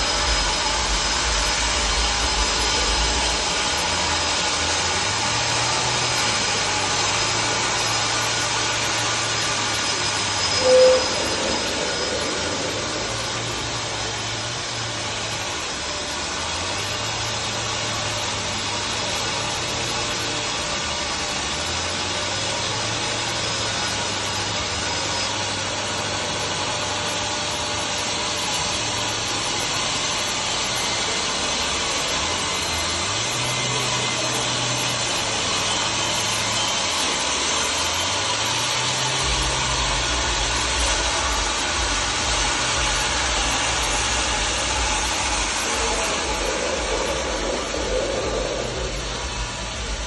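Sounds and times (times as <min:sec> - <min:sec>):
saw cutting wood: 0:00.0 - 0:50.0
low engine hum: 0:39.3 - 0:50.0.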